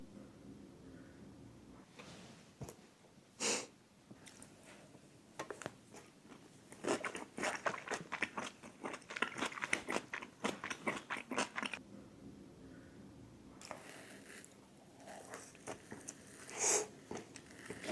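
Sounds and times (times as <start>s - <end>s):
crunchy chewing: 6.7s - 11.8s, 13.6s - 17.9s.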